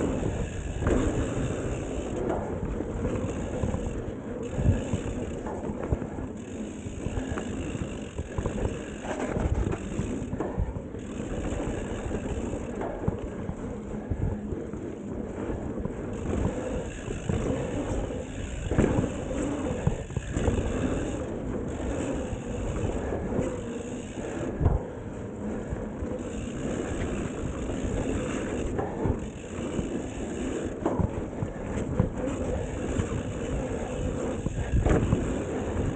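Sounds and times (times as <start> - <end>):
bike tyres rolling on dirt: 0.0 - 35.9
wind on microphone: 0.0 - 35.9.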